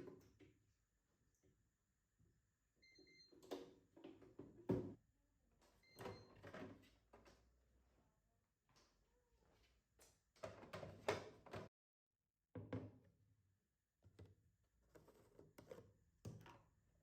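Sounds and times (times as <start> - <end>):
coffee machine beeps: 2.8 - 3.4, 5.8 - 6.4.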